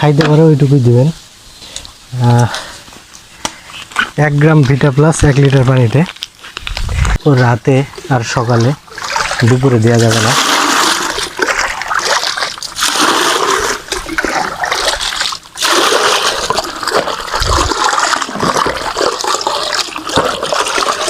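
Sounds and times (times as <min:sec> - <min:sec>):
water pouring into container: 0:08.9 - 0:21.0.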